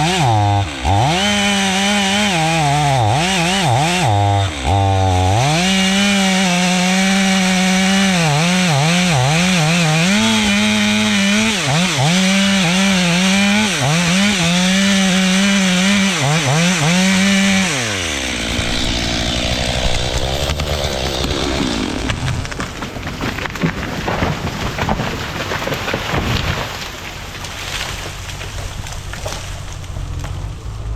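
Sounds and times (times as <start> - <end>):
chainsaw cutting at high revs: 0.0 - 30.4.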